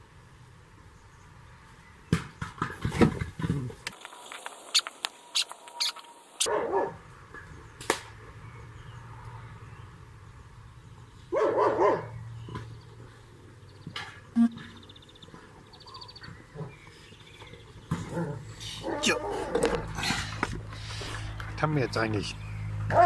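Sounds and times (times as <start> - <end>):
dog barking: 6.4 - 7.0, 11.3 - 12.2, 18.1 - 19.6.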